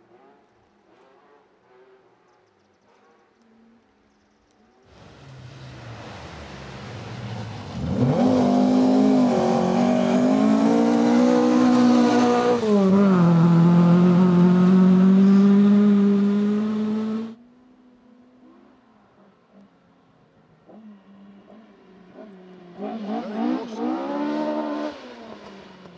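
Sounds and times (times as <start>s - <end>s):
rally car engine accelerating: 4.9s - 17.4s, 20.7s - 25.9s.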